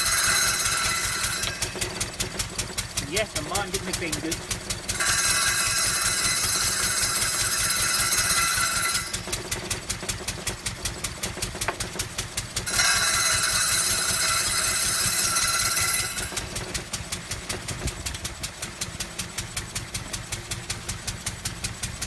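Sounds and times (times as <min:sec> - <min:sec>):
circular saw cutting wood: 0:00.0 - 0:10.6, 0:11.2 - 0:17.0
stationary engine chugging: 0:00.0 - 0:22.0.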